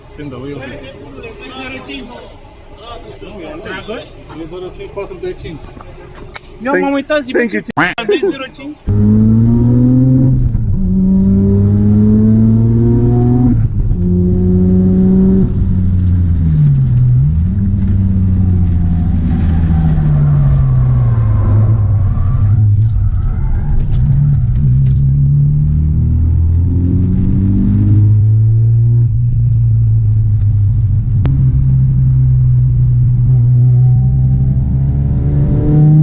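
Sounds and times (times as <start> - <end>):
rotary engine revving: 8.9 - 36.0.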